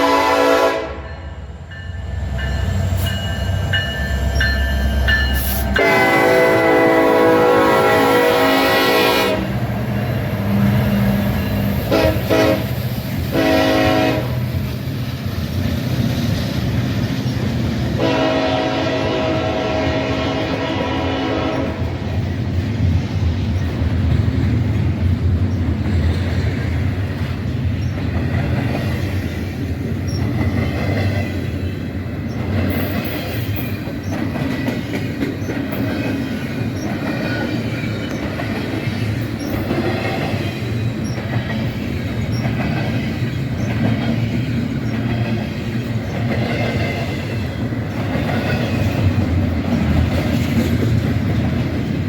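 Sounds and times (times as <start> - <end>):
locomotive air horn: 0.0 - 1.2, 5.5 - 9.5, 11.9 - 14.4, 18.0 - 21.9
train rumble: 0.0 - 52.0.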